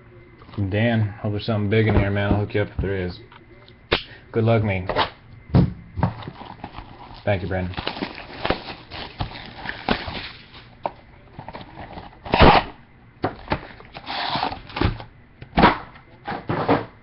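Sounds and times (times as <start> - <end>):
packaging rustling scrape: 6.2 - 10.7, 13.6 - 14.9
cardboard packaging clicks and knocks: 7.7 - 16.9.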